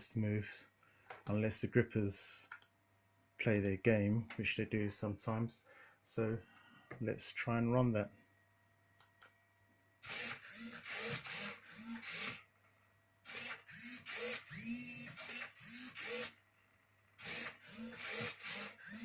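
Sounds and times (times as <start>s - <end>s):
servos whirring: 10.0s - 12.4s, 13.2s - 16.4s, 17.2s - 19.0s.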